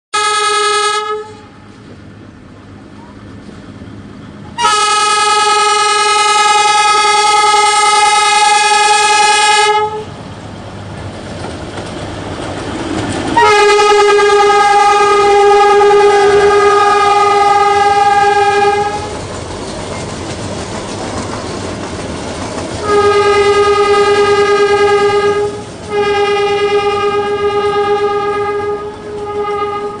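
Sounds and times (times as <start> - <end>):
diesel locomotive horn blasts: 0.1 - 1.8, 4.5 - 10.1, 13.4 - 19.2, 22.8 - 30.0
train rolling: 0.2 - 30.0.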